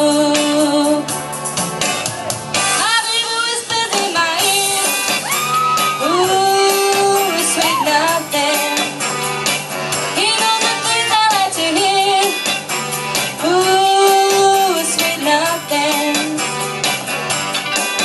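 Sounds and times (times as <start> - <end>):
woman singing pop music: 0.0 - 1.6, 2.6 - 18.0
backing track with steady beat: 0.0 - 18.0.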